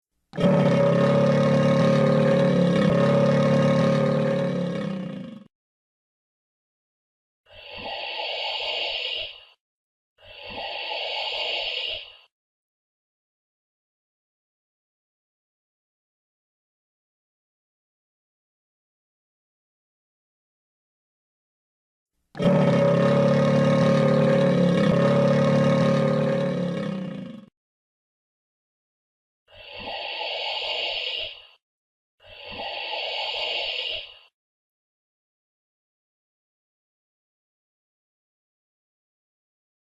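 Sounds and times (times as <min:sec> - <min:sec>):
cartoon monster low drone: 0:00.4 - 0:05.5, 0:22.4 - 0:27.5.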